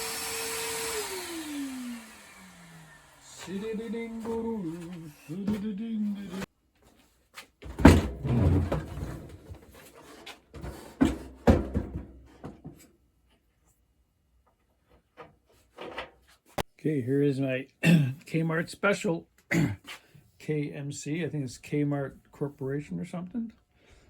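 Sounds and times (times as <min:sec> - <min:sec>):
person humming: 0:03.3 - 0:06.5
wooden knocks and clunks: 0:07.6 - 0:09.7, 0:10.5 - 0:12.8.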